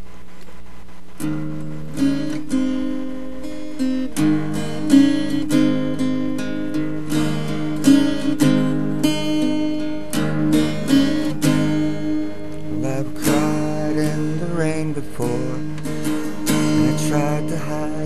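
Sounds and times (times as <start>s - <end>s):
acoustic guitar strumming chords: 1.1s - 18.0s.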